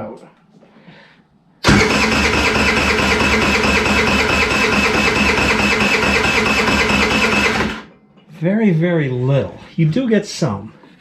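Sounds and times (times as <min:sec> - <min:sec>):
scooter engine cranking: 0:01.6 - 0:07.9.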